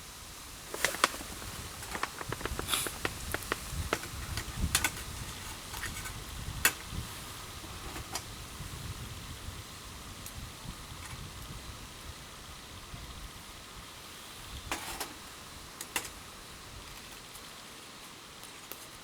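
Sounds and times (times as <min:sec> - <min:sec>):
steady hiss: 0:00.0 - 0:19.0
campfire crackling and popping: 0:00.4 - 0:06.9.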